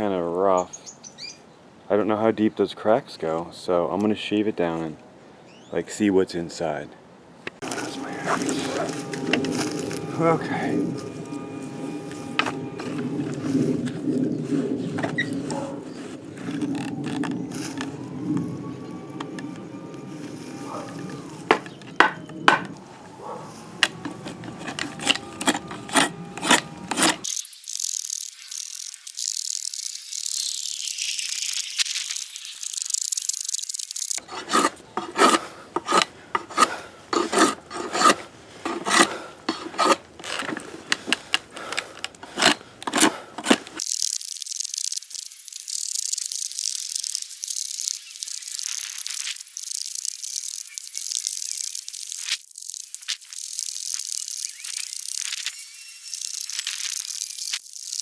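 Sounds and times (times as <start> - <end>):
draw knife scraping wood: 7.6 - 10.2, 12.1 - 13.6, 20.6 - 22.8, 23.4 - 27.2, 34.2 - 43.8.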